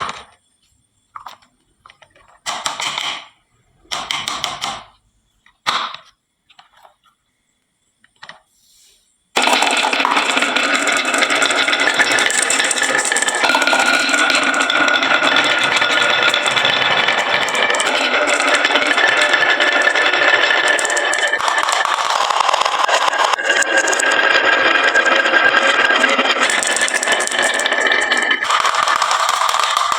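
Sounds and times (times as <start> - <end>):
marbles rattling down wooden run: 9.4 - 29.9.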